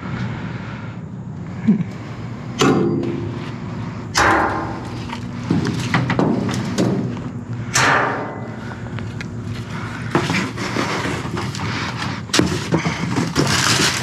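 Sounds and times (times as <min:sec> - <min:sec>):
steady low hum: 0:00.0 - 0:14.0
loud bangs and thuds: 0:02.6 - 0:03.4, 0:04.1 - 0:08.5.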